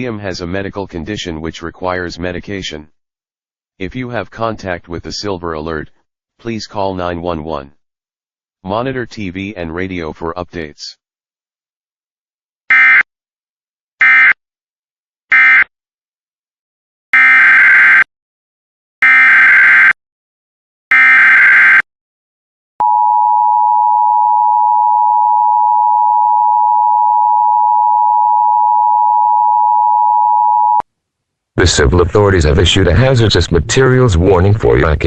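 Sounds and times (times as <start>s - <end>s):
steady attention tone: 22.8s - 30.8s.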